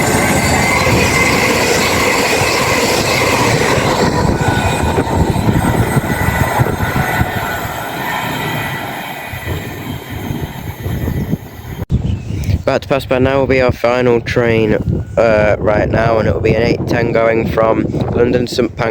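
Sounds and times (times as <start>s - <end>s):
train passing at speed: 0.0s - 11.9s.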